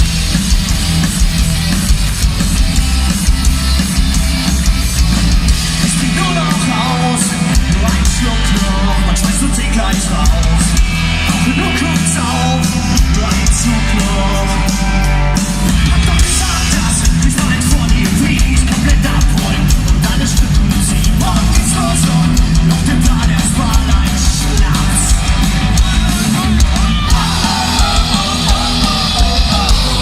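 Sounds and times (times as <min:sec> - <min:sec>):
punk rock band playing: 0:00.0 - 0:30.0
shouted vocals: 0:24.4 - 0:30.0.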